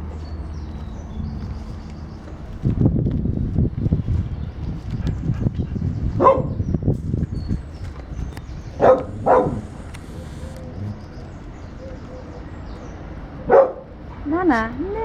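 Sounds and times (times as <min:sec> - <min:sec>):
dog barking: 0:06.2 - 0:06.6, 0:08.8 - 0:11.0, 0:13.5 - 0:13.9
low rumbling noise: 0:06.7 - 0:13.4.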